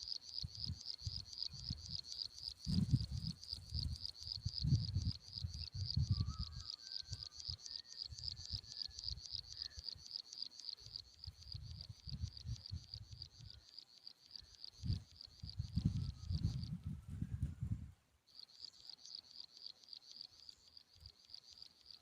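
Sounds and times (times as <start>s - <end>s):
insect chirping: 0.0s - 16.9s, 18.3s - 22.0s
wind buffeting microphone: 0.4s - 6.6s, 11.3s - 13.5s, 14.8s - 18.0s.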